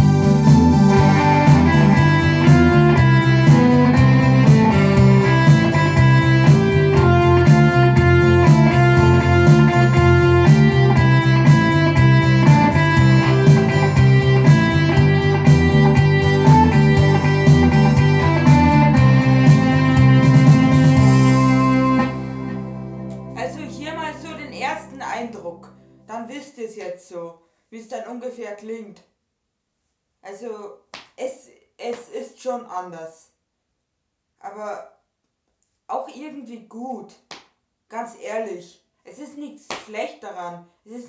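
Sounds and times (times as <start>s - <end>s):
rhythmic accompaniment: 0.0s - 25.8s
electronic keyboard music: 0.0s - 26.1s.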